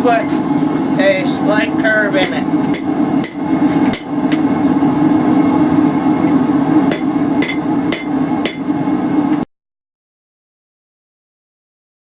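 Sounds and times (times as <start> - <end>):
low hum: 0.0 - 9.5
hammer striking spike on anvil: 2.2 - 4.4, 6.9 - 8.7.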